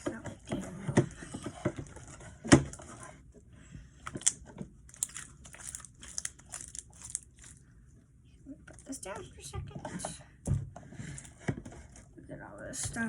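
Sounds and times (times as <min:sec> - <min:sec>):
slime squishing: 0:00.0 - 0:07.8.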